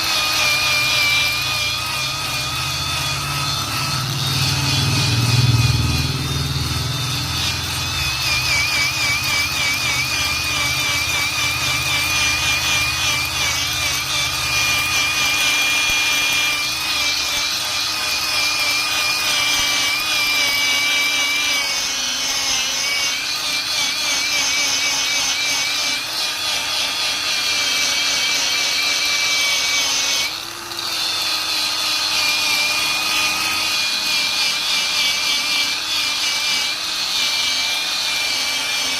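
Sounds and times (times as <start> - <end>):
wire brush grinding on metal: 0.0 - 38.9.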